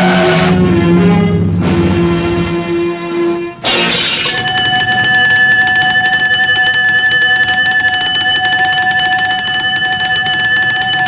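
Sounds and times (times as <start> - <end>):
fluttering bell-like ringing: 3.7 - 11.0.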